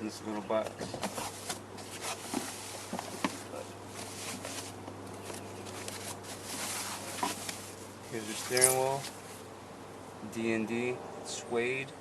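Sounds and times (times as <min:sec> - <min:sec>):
low steady hum: 0:00.0 - 0:12.0
packaging rustling: 0:01.0 - 0:09.1.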